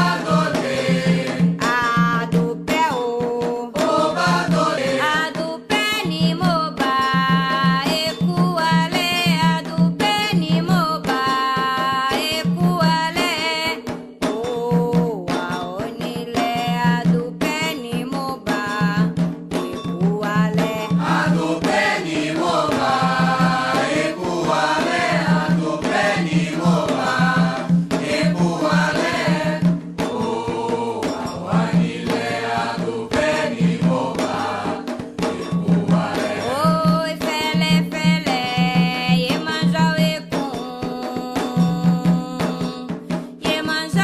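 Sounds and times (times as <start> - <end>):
voices chanting a song: 0.0 - 1.6, 3.9 - 5.1, 21.0 - 36.7
hand drums beating: 0.0 - 44.0.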